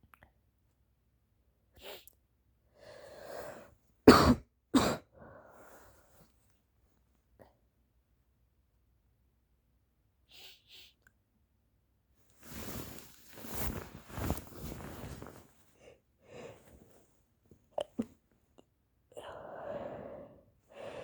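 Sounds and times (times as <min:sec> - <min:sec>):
person sniffing: 0:10.3 - 0:11.0.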